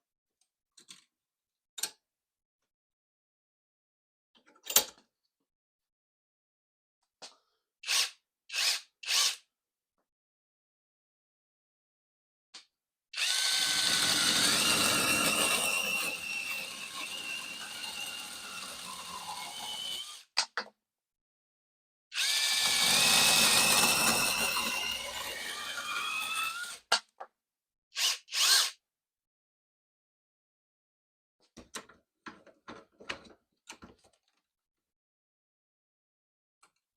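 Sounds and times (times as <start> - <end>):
cordless screwdriver whining: 13.2 - 20.2, 22.2 - 26.8, 28.0 - 28.8.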